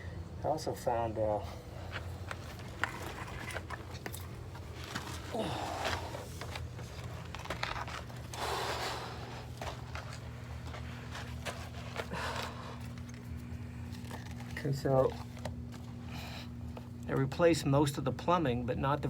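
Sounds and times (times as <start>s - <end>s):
steady low hum: 0.0s - 19.0s
scraping and crunching in crawl space: 1.8s - 17.1s
person breathing: 5.3s - 6.4s, 8.3s - 9.6s, 12.0s - 13.9s.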